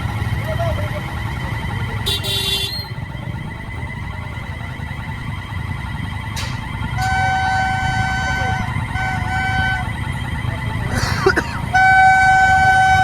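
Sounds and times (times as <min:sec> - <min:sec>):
train low rumble: 0:00.0 - 0:13.0
shrill horn blast: 0:02.0 - 0:03.0, 0:06.4 - 0:10.2, 0:11.3 - 0:13.0
warbling siren-like tone: 0:02.9 - 0:10.9.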